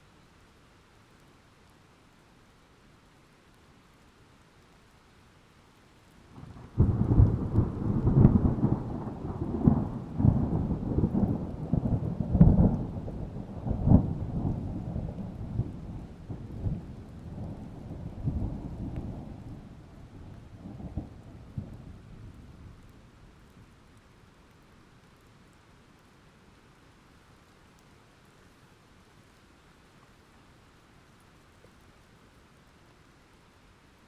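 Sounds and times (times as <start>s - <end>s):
thunder crack and rumble: 6.4s - 22.9s.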